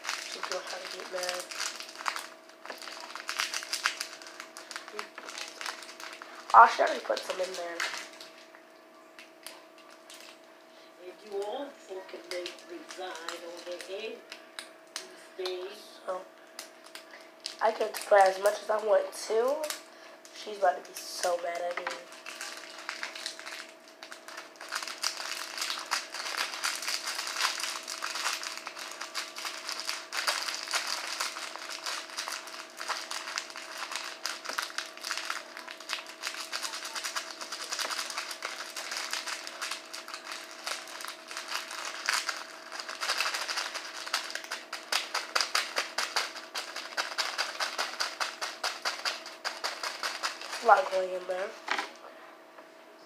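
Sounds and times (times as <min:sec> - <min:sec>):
low electrical hum: 0:00.0 - 0:53.0
slime clicking and rattling: 0:21.9 - 0:51.0.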